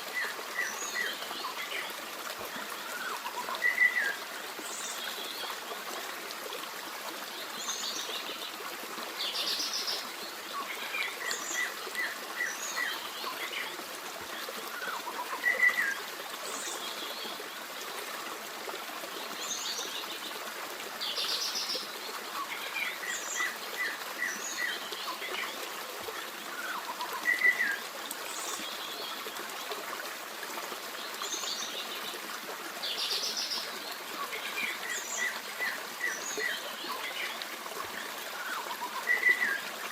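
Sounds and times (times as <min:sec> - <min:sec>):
forest stream running: 0:00.0 - 0:39.9.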